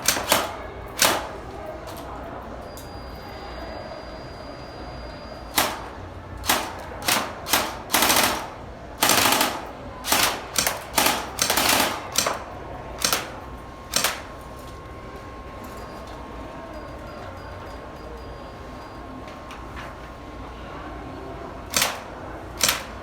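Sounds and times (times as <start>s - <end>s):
airsoft gun firing: 0.0s - 1.3s, 5.6s - 12.4s, 21.7s - 22.0s, 22.6s - 22.9s.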